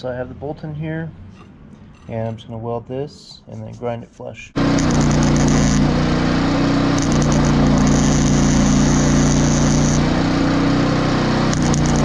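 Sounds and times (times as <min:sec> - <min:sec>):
generator drone: 0:04.6 - 0:12.0
welding arc crackling: 0:04.6 - 0:12.0.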